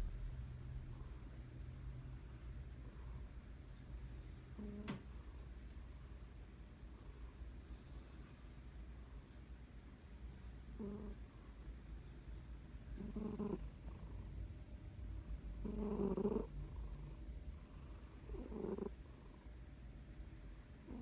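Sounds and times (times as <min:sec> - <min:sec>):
cat snoring: 0:00.9 - 0:01.3, 0:04.4 - 0:05.4, 0:10.6 - 0:11.2, 0:13.0 - 0:14.2, 0:15.3 - 0:19.4, 0:20.7 - 0:21.0.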